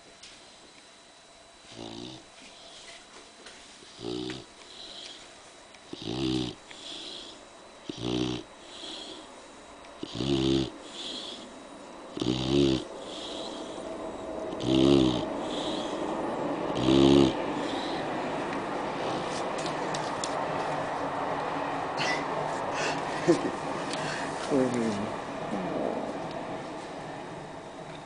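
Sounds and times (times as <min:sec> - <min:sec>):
dog snoring: 0:01.6 - 0:02.9, 0:03.9 - 0:05.3, 0:05.9 - 0:09.4, 0:10.0 - 0:13.9, 0:14.5 - 0:16.1, 0:16.7 - 0:18.1.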